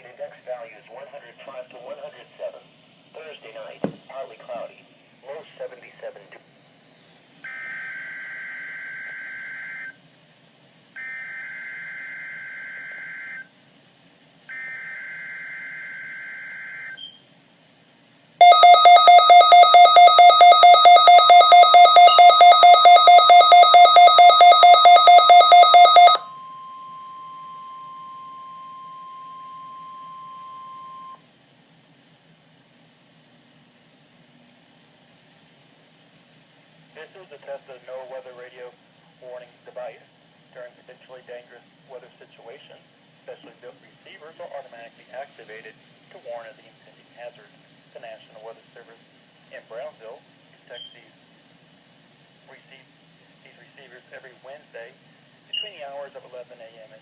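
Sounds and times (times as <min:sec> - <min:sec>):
steady warning tone: 0:07.5 - 0:10.0, 0:11.0 - 0:13.5, 0:14.5 - 0:17.0, 0:18.4 - 0:31.2
buzzy alarm beeping: 0:18.4 - 0:31.2.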